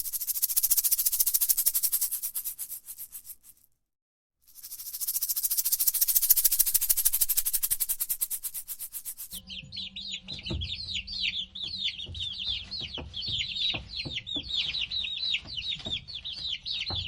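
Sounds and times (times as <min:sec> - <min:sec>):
fast dry rattling buzz: 0:00.0 - 0:03.7, 0:04.5 - 0:09.4.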